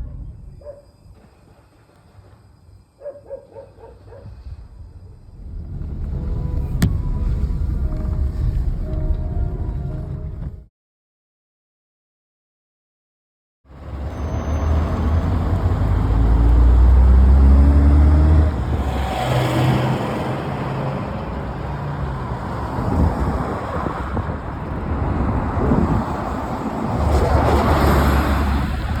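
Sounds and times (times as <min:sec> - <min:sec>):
vehicles driving past: 0:04.9 - 0:10.6, 0:13.7 - 0:29.0.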